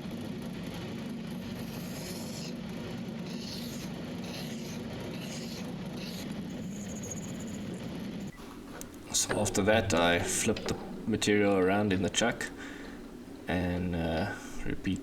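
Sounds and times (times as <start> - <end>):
lathe motor hum: 0.0 - 15.0
cutting tool scraping steel: 0.8 - 15.0
thin high whine: 3.4 - 15.0.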